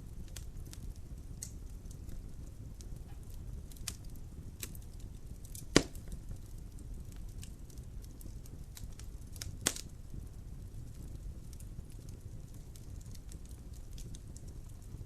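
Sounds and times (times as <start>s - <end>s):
fire crackling: 0.0s - 15.0s
fire rumbling in a fireplace: 0.0s - 15.0s
loud pop from fire: 5.4s - 7.5s, 8.1s - 9.9s.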